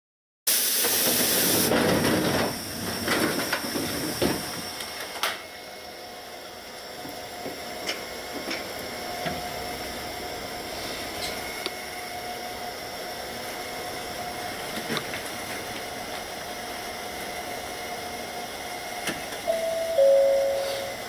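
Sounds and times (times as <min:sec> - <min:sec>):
loud hiss of air: 0:00.5 - 0:01.7
streetcar running with steady hum: 0:01.1 - 0:21.0
faint steady tone: 0:19.5 - 0:21.0.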